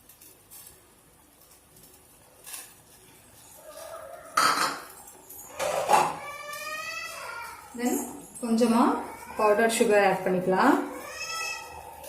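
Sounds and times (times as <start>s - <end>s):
utensil clinking against pan: 4.2s - 6.2s.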